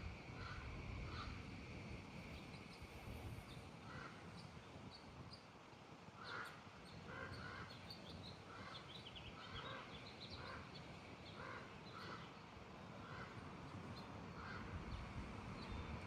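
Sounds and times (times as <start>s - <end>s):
small birds chirping: 2.2s - 16.0s
bird calling: 6.2s - 13.4s.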